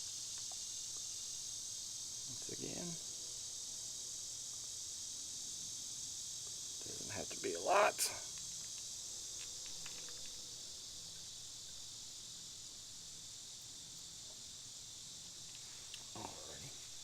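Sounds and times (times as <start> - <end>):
high-pitched hiss: 0.0 - 17.0
light clicks: 8.3 - 10.4.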